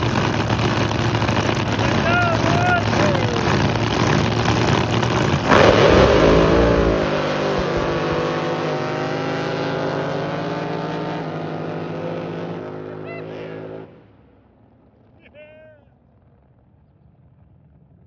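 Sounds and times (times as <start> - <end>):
boat engine passing: 0.0 - 10.6.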